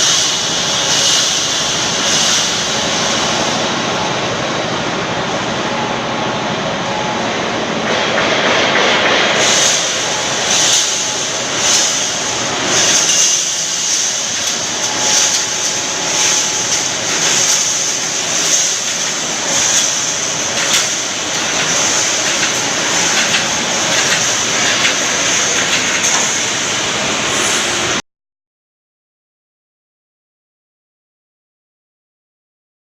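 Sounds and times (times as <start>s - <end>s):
welding machine running: 0.0s - 28.0s
welding stroke: 9.4s - 28.0s.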